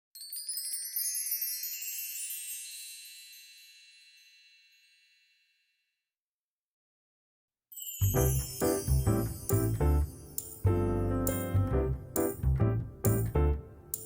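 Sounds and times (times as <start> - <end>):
shimmering chime: 0.2 - 5.9, 7.7 - 11.2.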